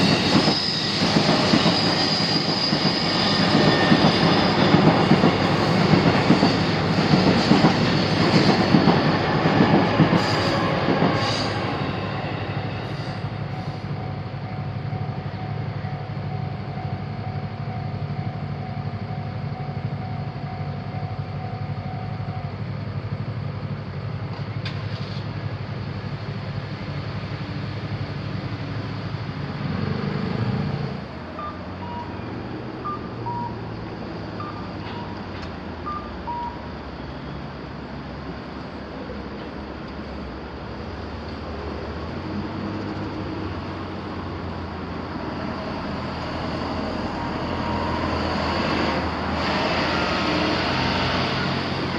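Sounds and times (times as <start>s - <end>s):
traffic: 0.0s - 51.9s
two-tone electronic beeps: 32.8s - 33.6s, 34.4s - 35.2s.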